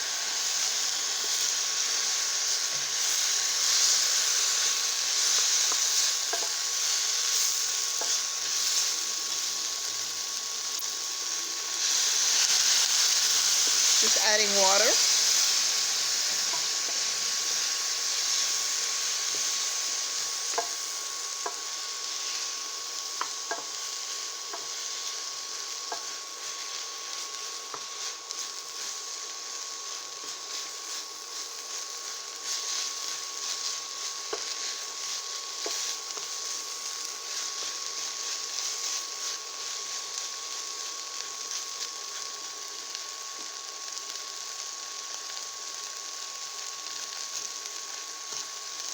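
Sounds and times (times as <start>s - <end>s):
vegetables sizzling in a pan: 0.0s - 48.9s.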